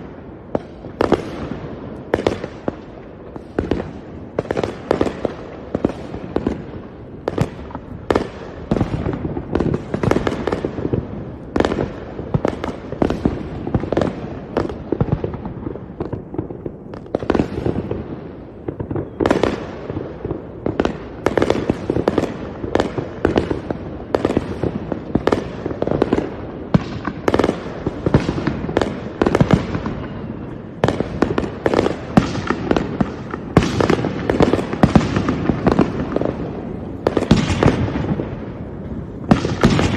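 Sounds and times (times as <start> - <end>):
fireworks bangs with rumbling echo: 0.0 - 39.9.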